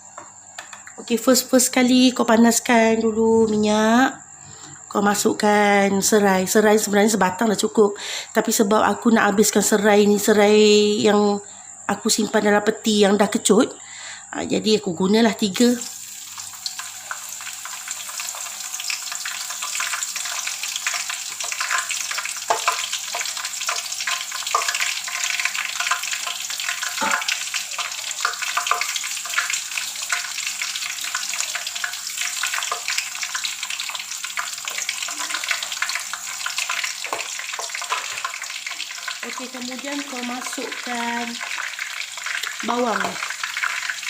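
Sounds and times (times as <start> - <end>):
lemongrass sizzling in hot oil: 15.0 - 44.0.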